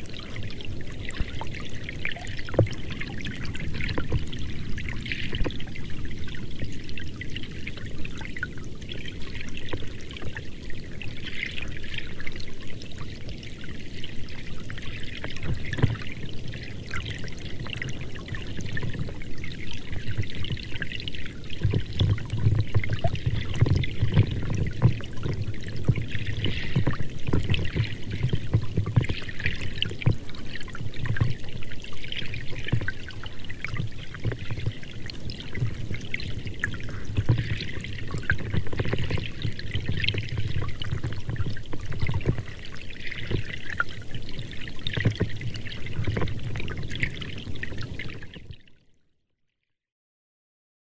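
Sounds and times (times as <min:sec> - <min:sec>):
running water splashing: 0:14.3 - 0:48.5.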